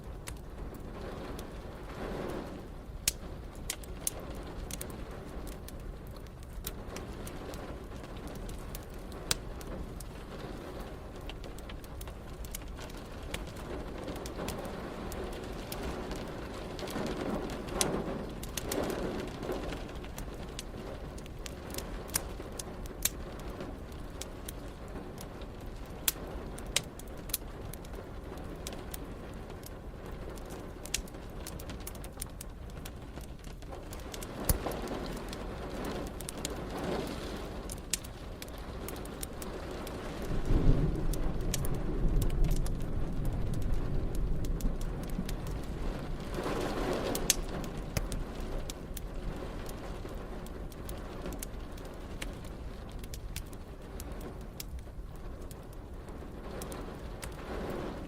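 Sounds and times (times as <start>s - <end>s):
steady rain: 0.0s - 58.0s
wood fire crackling: 0.0s - 58.0s
low thunder rumble: 39.5s - 51.2s.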